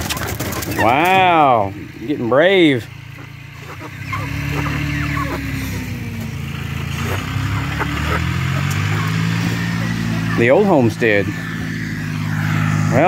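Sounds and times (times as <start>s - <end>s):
small tractor engine running: 0.0s - 13.0s
short bird calls: 2.9s - 6.1s.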